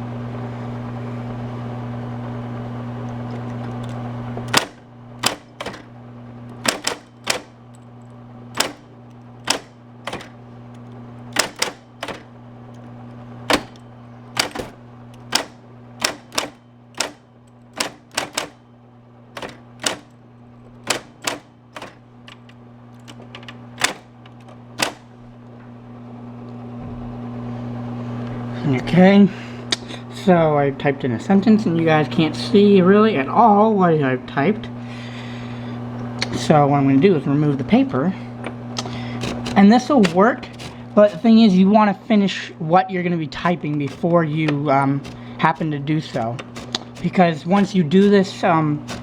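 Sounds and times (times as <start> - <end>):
typewriter motor hum: 1.9 - 25.6, 34.9 - 49.0
typewriter key strikes: 3.8 - 5.9, 6.5 - 7.8, 8.5 - 12.3, 13.5 - 18.6, 19.4 - 20.2, 20.8 - 25.1, 38.8 - 41.4, 43.6 - 49.0.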